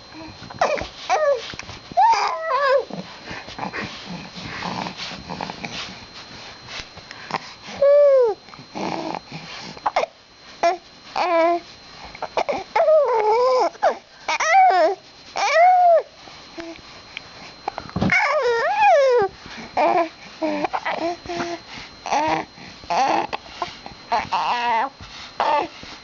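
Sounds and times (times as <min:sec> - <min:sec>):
baby babbling and squealing: 0:02.0 - 0:02.8.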